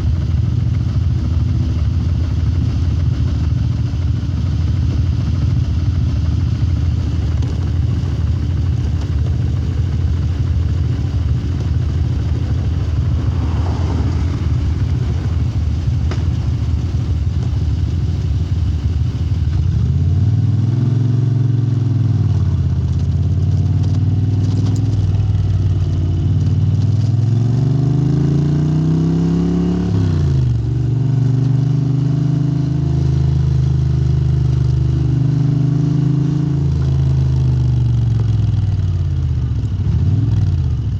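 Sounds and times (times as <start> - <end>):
dense noisy rumble: 0.0 - 27.6, 36.1 - 40.9
motorcycle engine revving: 0.0 - 30.7.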